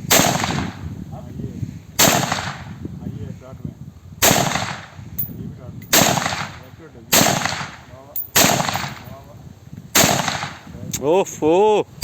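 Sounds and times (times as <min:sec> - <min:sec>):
pistol shots echoing: 0:05.9 - 0:09.1, 0:10.0 - 0:10.6.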